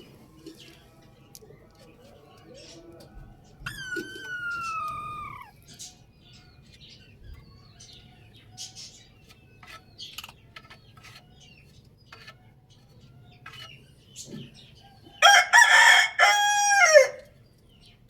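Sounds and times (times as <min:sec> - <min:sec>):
small birds chirping: 0:00.0 - 0:15.4, 0:17.2 - 0:18.0
rooster crowing: 0:03.6 - 0:05.5, 0:15.2 - 0:17.2.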